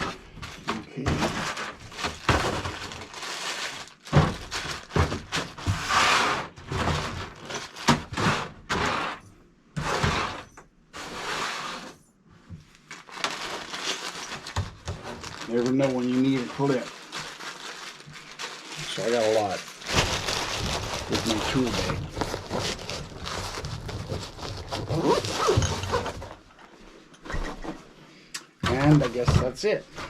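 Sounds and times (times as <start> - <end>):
bag rustling: 12.9 - 26.8.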